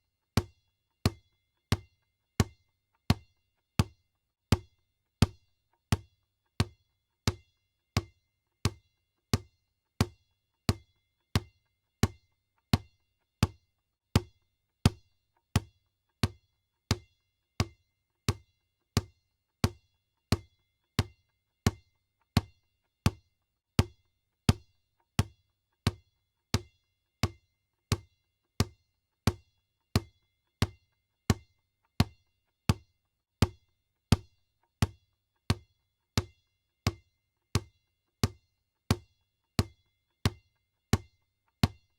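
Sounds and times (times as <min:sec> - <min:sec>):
basketball bouncing on floor: 0:26.6 - 0:35.6, 0:37.6 - 0:40.4.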